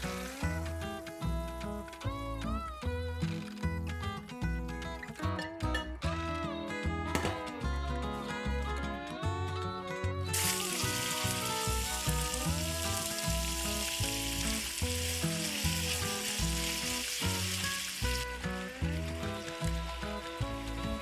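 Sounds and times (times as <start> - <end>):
food sizzling in a hot pan: 0.0 - 1.4, 10.3 - 20.8
background music with steady beat: 0.0 - 9.4.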